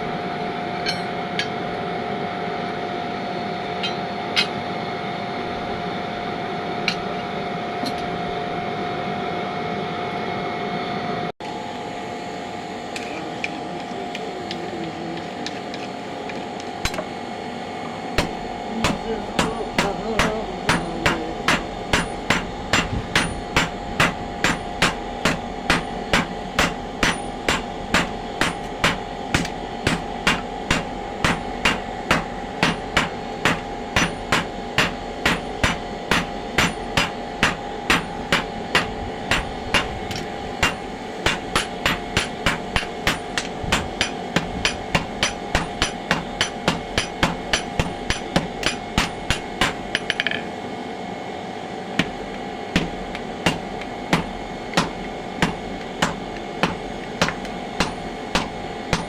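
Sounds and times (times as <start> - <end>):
hammer striking metal: 0.8 - 1.5, 16.8 - 17.1, 18.2 - 50.5, 52.0 - 59.0.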